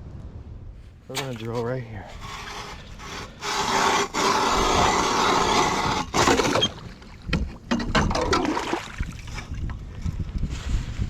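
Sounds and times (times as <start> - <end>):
ice auger drilling ice: 1.1 - 7.1.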